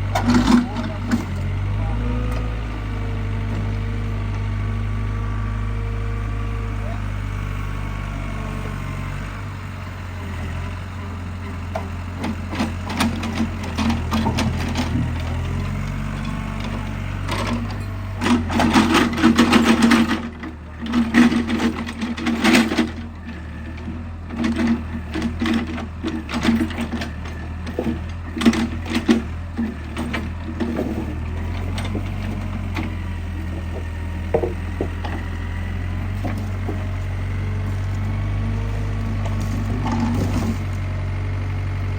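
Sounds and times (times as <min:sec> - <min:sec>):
excavator diesel engine running: 0:00.0 - 0:41.9
logs knocking and clattering: 0:30.1 - 0:37.2.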